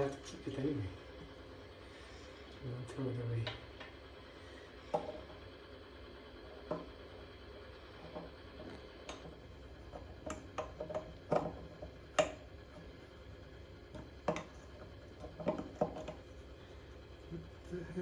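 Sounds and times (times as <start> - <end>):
tap fittings clicking and knocking: 9.0 - 12.4, 13.9 - 16.2.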